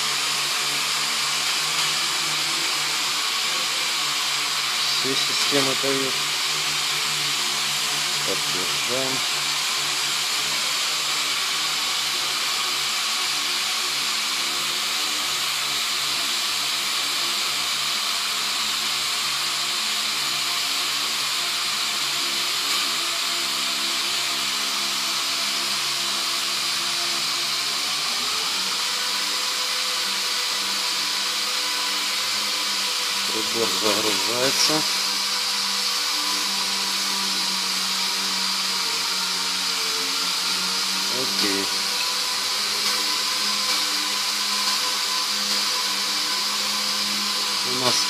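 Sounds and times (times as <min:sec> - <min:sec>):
machine whirring hum with hiss: 0:00.0 - 0:48.0.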